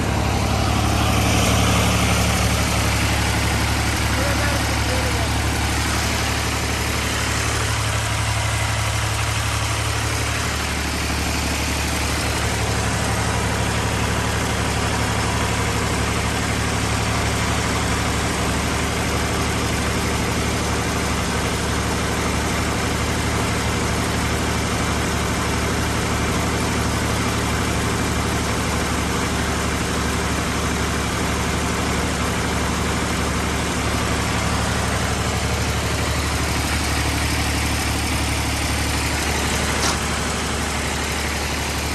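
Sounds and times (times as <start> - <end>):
thresher mechanical rush: 0.0 - 14.3, 35.1 - 41.9
tractor diesel engine running: 0.0 - 41.9.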